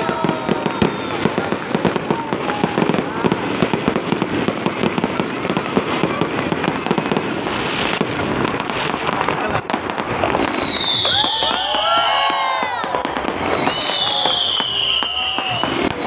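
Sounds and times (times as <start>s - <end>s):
fireworks crackling and banging: 0.0s - 16.0s
firework whistle falling in pitch: 10.2s - 16.0s.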